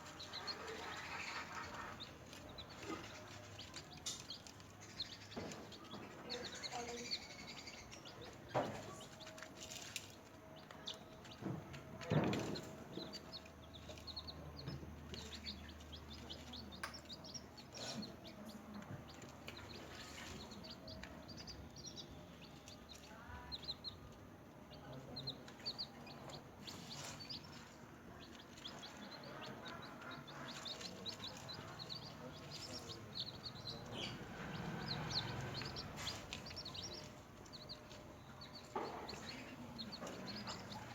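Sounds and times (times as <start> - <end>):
chicks peeping: 0.0 - 40.9.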